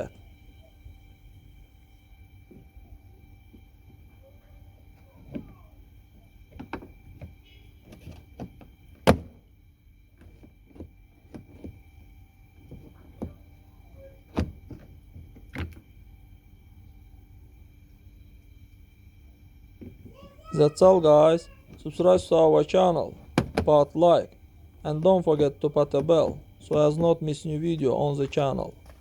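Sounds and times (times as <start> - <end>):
faint steady whine: 0.0 - 29.0
car door handle clicks and knocks: 23.3 - 23.7.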